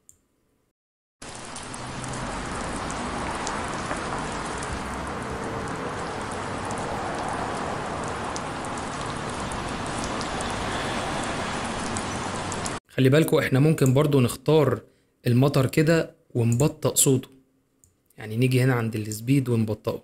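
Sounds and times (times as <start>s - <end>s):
faint raindrop ticks: 1.2s - 10.8s
light rain hiss: 1.2s - 12.8s.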